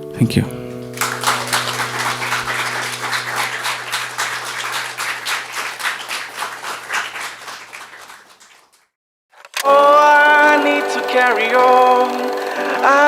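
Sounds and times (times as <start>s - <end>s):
audience applauding: 0.6s - 8.8s.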